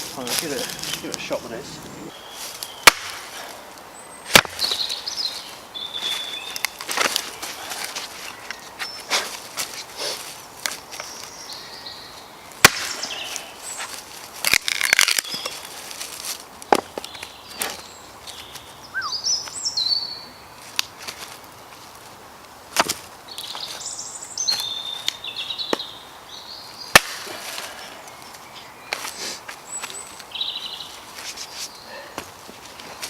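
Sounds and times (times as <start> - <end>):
small birds chirping: 0.0 - 2.9, 3.8 - 14.1, 16.9 - 20.7, 23.2 - 32.2
axe chopping wood: 2.8 - 3.4, 4.3 - 4.8, 12.6 - 13.2, 26.9 - 27.7.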